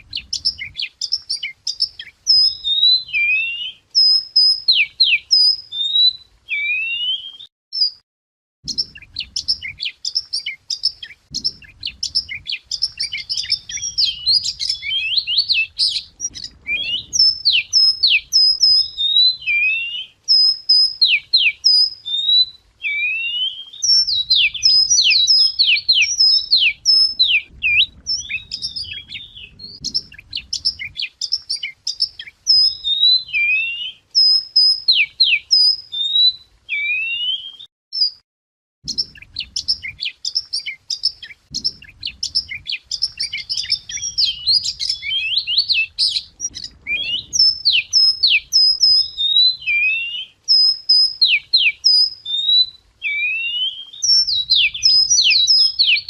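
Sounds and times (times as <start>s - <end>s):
wagtail singing: 0.0s - 8.0s, 8.6s - 38.2s, 38.8s - 56.0s.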